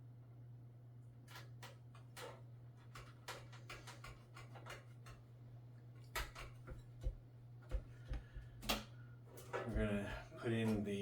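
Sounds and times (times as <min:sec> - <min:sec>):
clicks and taps of small parts: 0:01.3 - 0:05.2, 0:06.0 - 0:08.9.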